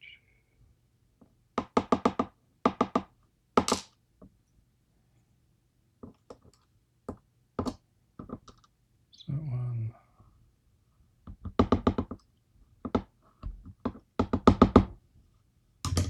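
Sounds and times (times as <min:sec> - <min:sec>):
knocks and taps on hard surface: 0:01.6 - 0:04.3, 0:07.1 - 0:08.6, 0:11.2 - 0:12.2, 0:12.8 - 0:15.0.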